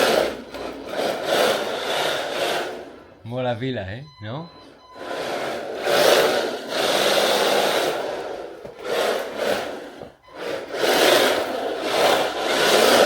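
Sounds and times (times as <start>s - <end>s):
toy car motor whirring: 0.0s - 3.1s, 4.9s - 13.0s
tyres scrubbing on floor: 0.0s - 3.3s, 4.9s - 13.0s.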